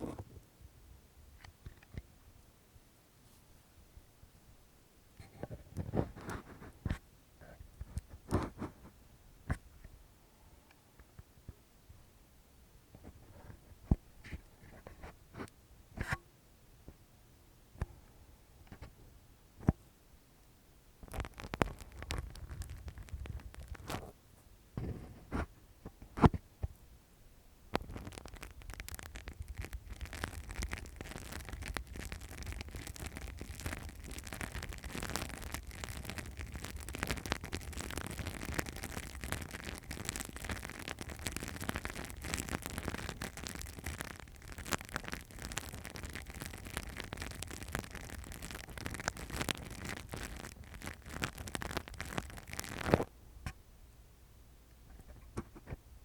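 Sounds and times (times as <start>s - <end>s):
scratching and rustling on microphone: 0.0s - 0.4s, 3.2s - 3.6s, 5.2s - 10.0s, 12.9s - 16.2s, 21.0s - 26.8s, 27.7s - 53.1s, 54.8s - 55.8s
taps and clicks on microphone: 21.0s - 24.0s.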